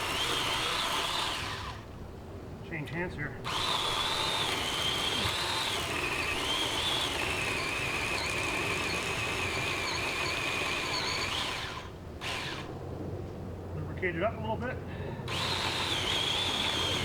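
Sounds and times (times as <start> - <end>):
electric chainsaw cutting wood: 0.0 - 1.9, 3.5 - 12.8, 15.3 - 17.0.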